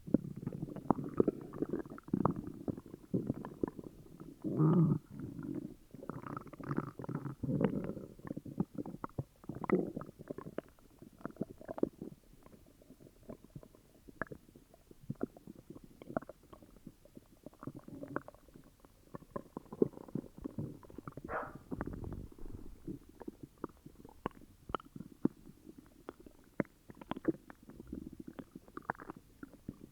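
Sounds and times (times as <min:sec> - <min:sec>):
stomach gurgling and growling: 0:00.0 - 0:29.9.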